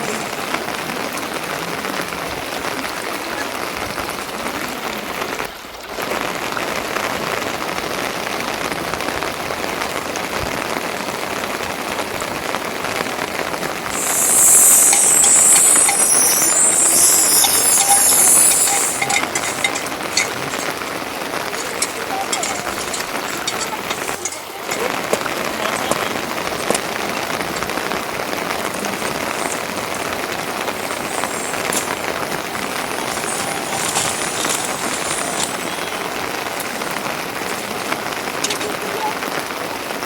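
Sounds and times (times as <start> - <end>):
steady rain falling: 0.0 - 40.0
high-pitched hiss: 13.9 - 21.0, 21.6 - 24.5, 28.6 - 38.2.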